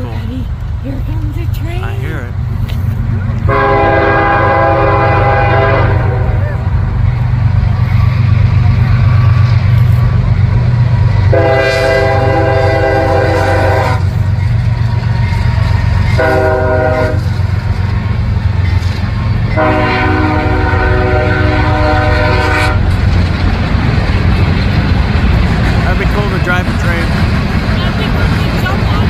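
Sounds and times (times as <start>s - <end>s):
freight train rumbling: 0.0s - 29.0s
locomotive air horn: 3.4s - 6.6s, 11.2s - 14.2s, 16.1s - 17.5s, 19.5s - 23.0s.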